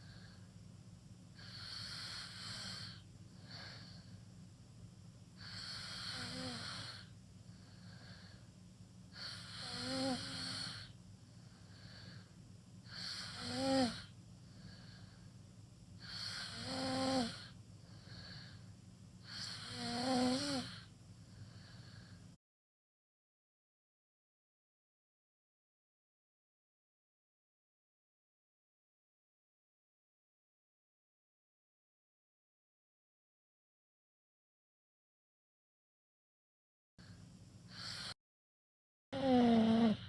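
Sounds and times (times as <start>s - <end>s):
faint breaths: 0.0s - 4.4s, 5.4s - 22.4s, 37.0s - 38.2s
person snoring: 1.4s - 4.1s, 5.4s - 7.1s, 9.1s - 11.0s, 12.8s - 14.1s, 16.0s - 18.5s, 19.2s - 20.9s, 37.7s - 38.2s, 39.2s - 40.0s.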